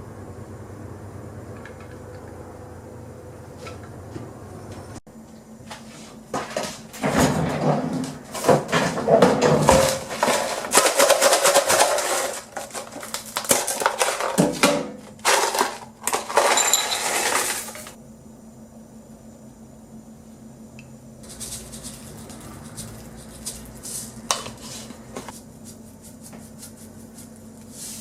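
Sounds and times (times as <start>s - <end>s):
clattering and rustling: 6.4s - 18.0s.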